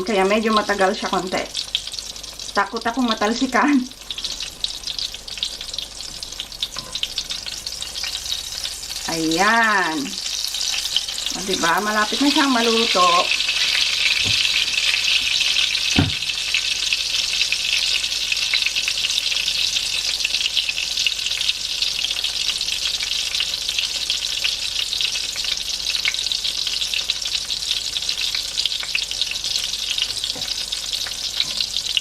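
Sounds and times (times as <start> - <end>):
omelette sizzling in oil: 0.0 - 32.0
soft thump: 16.0 - 16.3.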